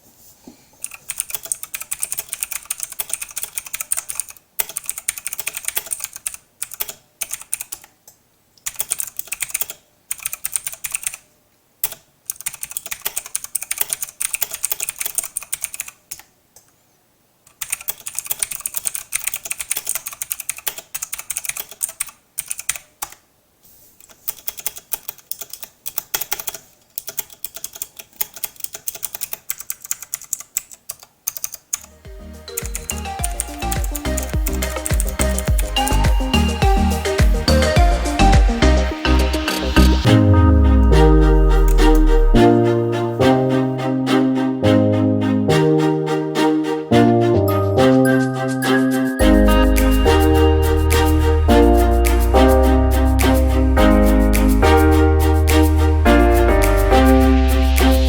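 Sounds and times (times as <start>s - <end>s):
clicky mechanical keyboard typing: 0.8s - 7.9s, 8.6s - 16.3s, 17.5s - 23.2s, 24.0s - 38.6s.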